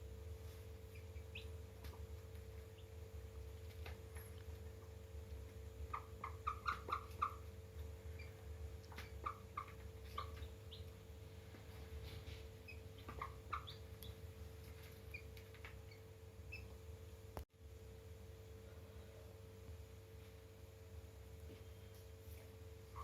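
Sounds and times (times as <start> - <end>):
faint steady hum: 0.0 - 23.0
chicks peeping: 0.5 - 16.8.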